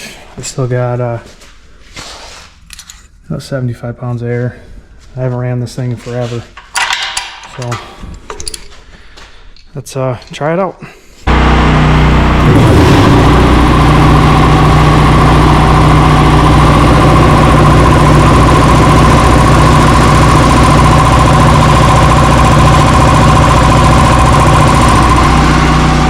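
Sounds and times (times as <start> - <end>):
air compressor running: 11.3 - 26.0.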